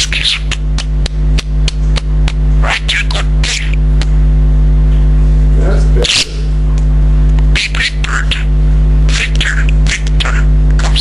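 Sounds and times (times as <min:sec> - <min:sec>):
loud steady low hum: 0:00.0 - 0:11.0
budgerigar chattering clicks: 0:07.6 - 0:08.5, 0:09.1 - 0:11.0.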